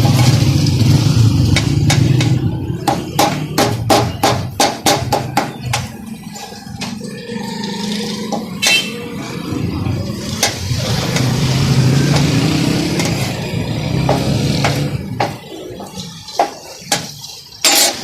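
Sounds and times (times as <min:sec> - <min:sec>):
motor engine humming: 0:08.3 - 0:15.9.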